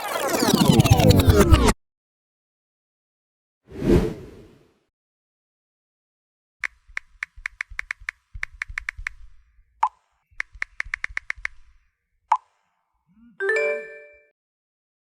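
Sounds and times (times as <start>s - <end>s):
rapid sharp clicks: 6.6s - 12.6s.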